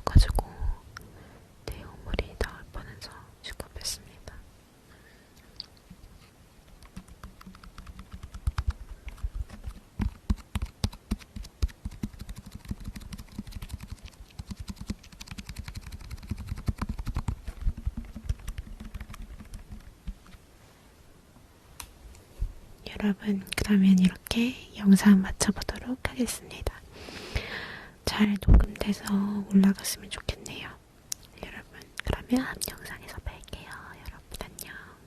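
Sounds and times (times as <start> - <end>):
rapid tapping: 6.6 - 20.4.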